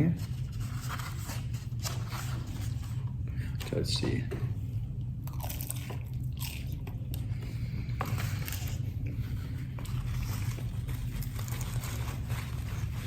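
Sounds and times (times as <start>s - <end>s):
steady low hum: 0.0s - 13.0s
crunchy chewing: 5.2s - 12.7s.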